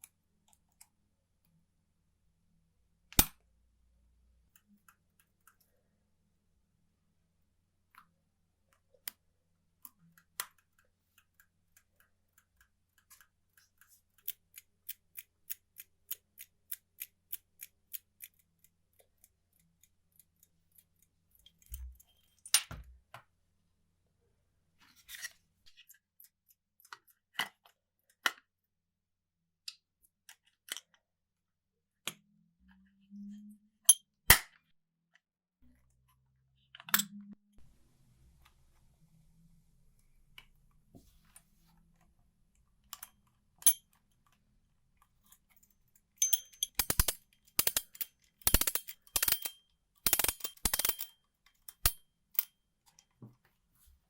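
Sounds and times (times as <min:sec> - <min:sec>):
metallic clicks and taps: 0:45.2 - 0:53.1.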